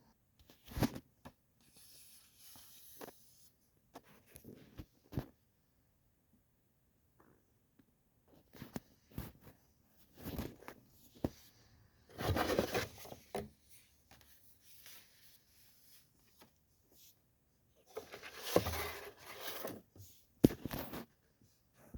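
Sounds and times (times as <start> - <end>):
packaging rustling and scraping: 12.1 - 13.5, 17.8 - 19.9.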